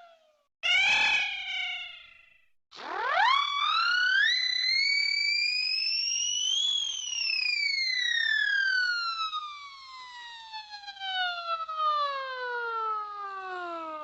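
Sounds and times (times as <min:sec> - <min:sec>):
cartoon falling whistle: 0:00.6 - 0:03.0.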